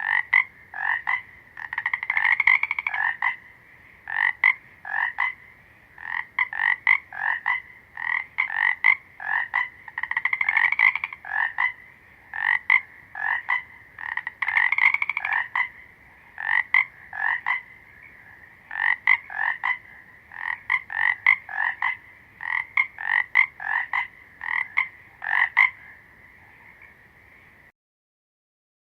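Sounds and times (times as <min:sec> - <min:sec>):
frogs croaking: 0:00.0 - 0:27.7
high drone of frogs: 0:00.0 - 0:27.7
frog rattling trill: 0:06.0 - 0:11.8, 0:12.4 - 0:15.7.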